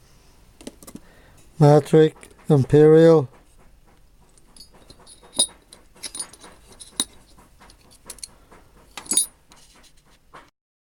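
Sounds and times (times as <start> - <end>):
steel tools clinking: 4.4 - 9.4.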